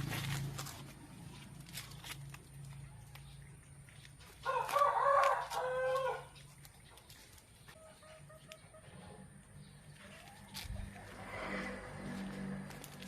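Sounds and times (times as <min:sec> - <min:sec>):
rooster crowing: 0:04.4 - 0:06.3.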